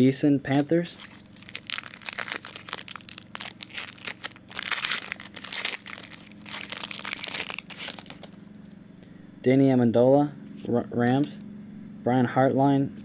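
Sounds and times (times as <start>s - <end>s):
foil wrapper crinkling: 0.9s - 8.5s.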